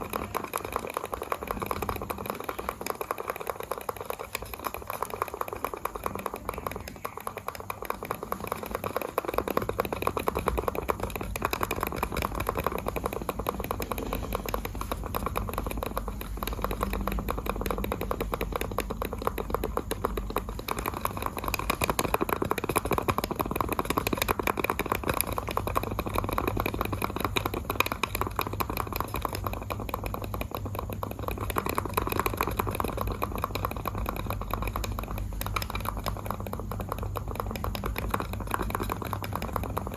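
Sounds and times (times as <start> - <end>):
computer mouse clicking rapidly: 0.0 - 39.9.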